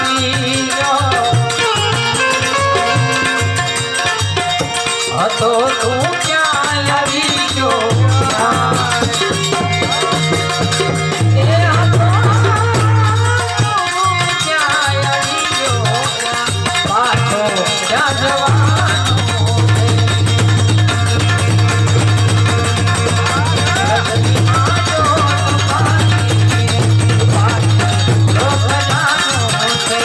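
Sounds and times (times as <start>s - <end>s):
harmonium notes: 0.0s - 30.0s
wavering ornamented melody: 1.7s - 5.3s.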